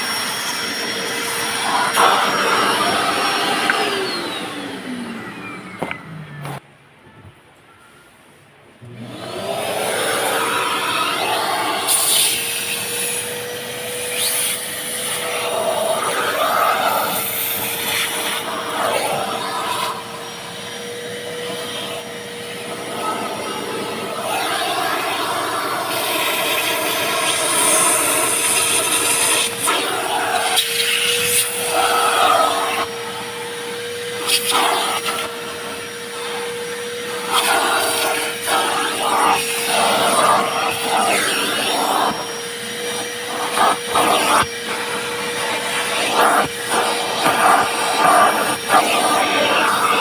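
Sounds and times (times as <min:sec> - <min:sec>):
vacuum cleaner whine: 0:00.0 - 0:08.1, 0:08.8 - 0:50.0.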